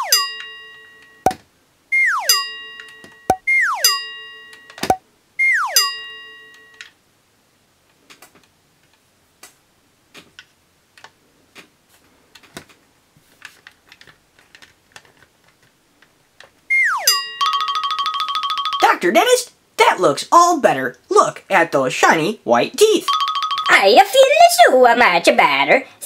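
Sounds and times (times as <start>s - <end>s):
cartoon falling whistle tone: 1.9s - 2.5s, 3.3s - 4.0s, 5.4s - 5.9s, 16.7s - 17.2s.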